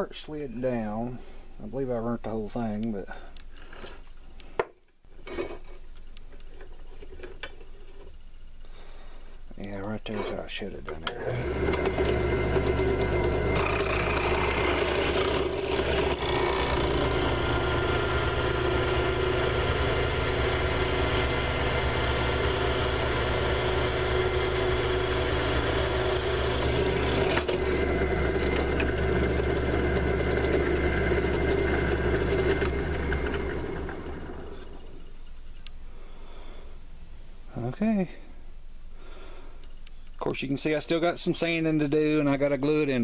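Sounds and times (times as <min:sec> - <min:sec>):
lathe motor humming: 0:11.1 - 0:35.0.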